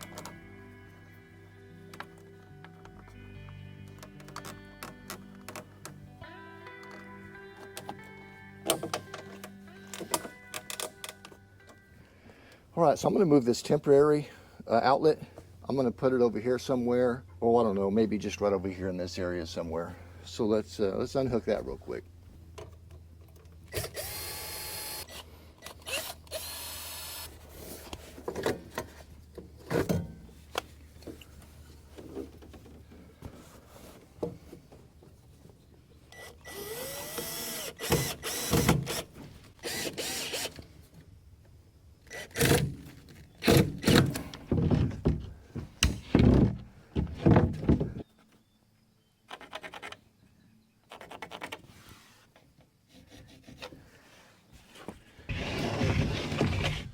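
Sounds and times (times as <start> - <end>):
power drill running: 23.7 - 25.2, 25.8 - 27.4, 36.2 - 40.6.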